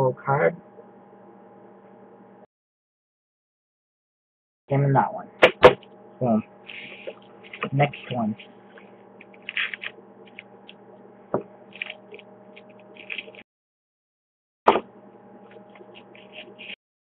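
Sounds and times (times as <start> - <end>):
steady electrical hum: 0.0 - 2.4, 4.7 - 13.4, 14.8 - 16.8
wrapper crinkling and tearing: 9.2 - 10.4, 11.7 - 12.2, 12.8 - 13.4.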